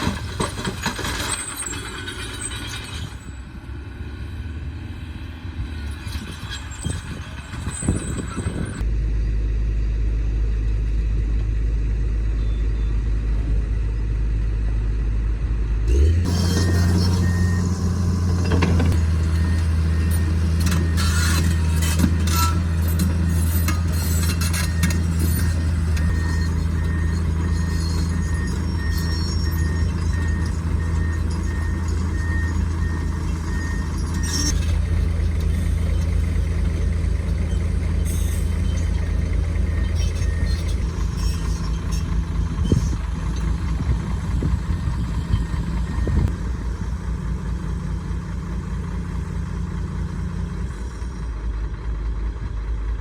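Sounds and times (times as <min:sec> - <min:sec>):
heavy diesel engine running: 0:00.0 - 0:53.0
reversing alarm beeping: 0:15.9 - 0:48.1
knocks and clanks: 0:18.3 - 0:19.1.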